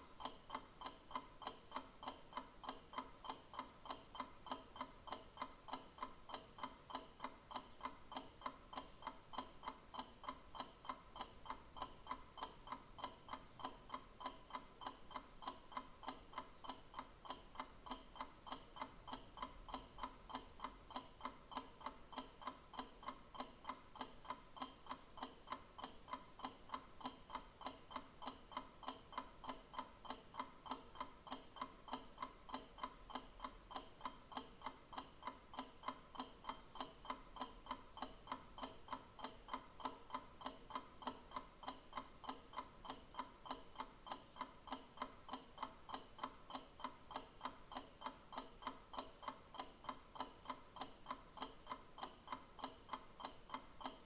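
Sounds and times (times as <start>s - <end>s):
clock ticking: 0.0s - 54.0s.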